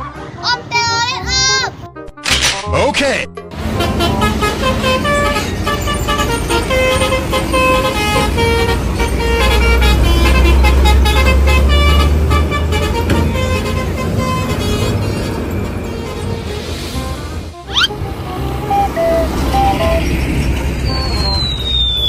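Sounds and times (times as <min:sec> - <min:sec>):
deep engine rumble: 0:03.5 - 0:22.0
vehicle horns honking: 0:03.6 - 0:16.8, 0:17.6 - 0:21.4.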